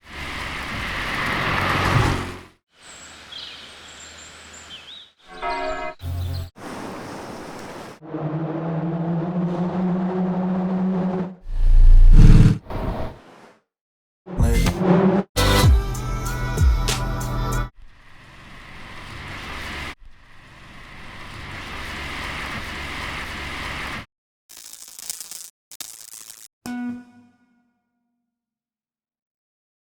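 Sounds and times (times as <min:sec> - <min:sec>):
tyres rushing on road: 0:07.8 - 0:11.4.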